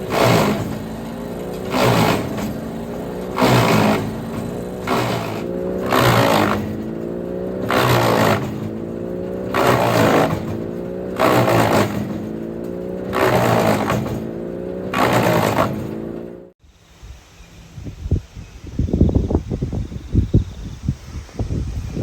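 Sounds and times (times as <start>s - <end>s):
wood chipper crunching wood: 0.0s - 16.6s
wood chipper engine: 0.0s - 16.6s.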